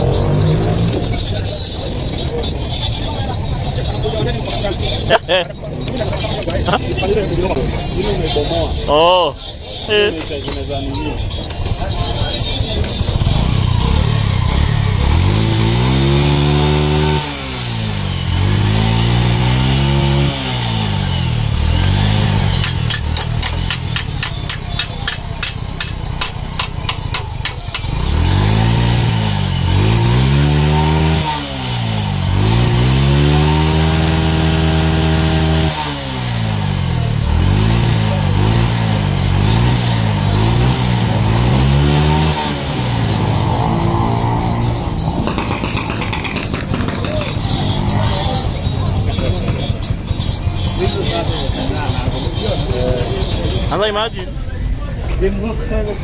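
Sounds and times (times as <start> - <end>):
motorcycle engine revving: 0.0 - 54.6
quick engine ticking: 22.1 - 28.8, 45.0 - 53.7.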